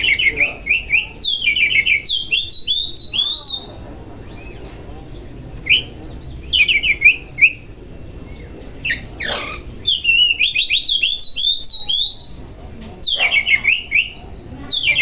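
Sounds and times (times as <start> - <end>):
bird singing whistled notes: 0.0 - 3.7, 5.6 - 7.7, 8.6 - 12.4, 13.0 - 15.0
bird harsh rasp: 8.9 - 10.4.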